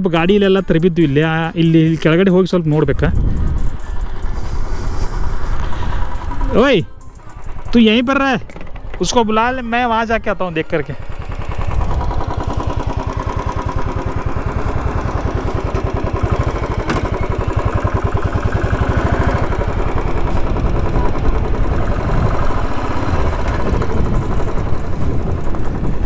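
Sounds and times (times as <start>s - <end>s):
motorcycle engine running at low revs: 0.0s - 26.0s.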